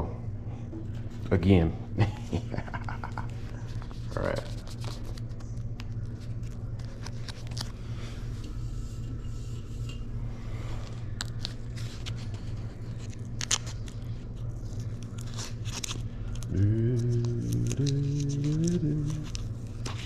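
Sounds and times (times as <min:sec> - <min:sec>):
steady low hum: 0:00.0 - 0:20.0
decal paper crinkling and scraping: 0:03.3 - 0:10.1, 0:10.7 - 0:16.5, 0:17.6 - 0:20.0.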